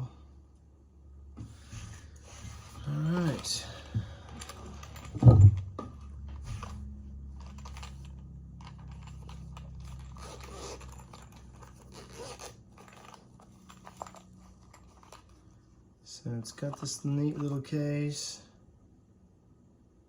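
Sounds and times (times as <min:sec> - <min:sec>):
cardboard and plastic rustling: 0:01.4 - 0:15.4.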